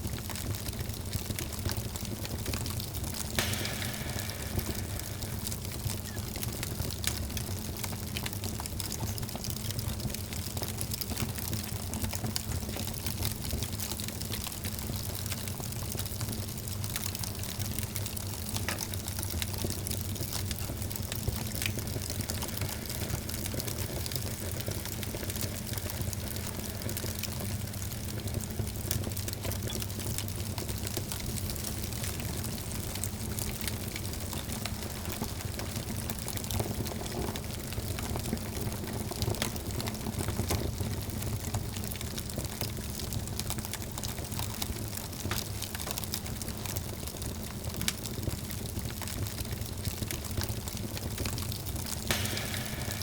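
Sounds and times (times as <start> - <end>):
wood fire crackling: 0.0 - 53.0.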